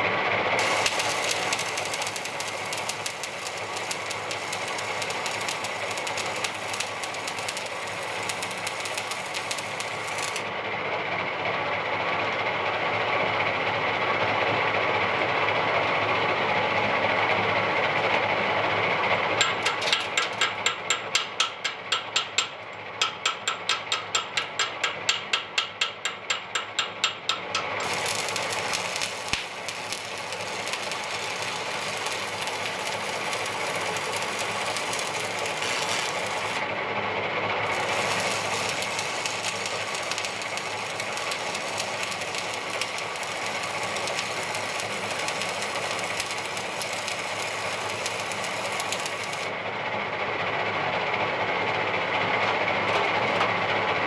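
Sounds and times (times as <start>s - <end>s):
metalworking machine crackling: 0.6s - 10.6s, 19.4s - 36.9s, 37.6s - 49.7s, 52.5s - 53.6s.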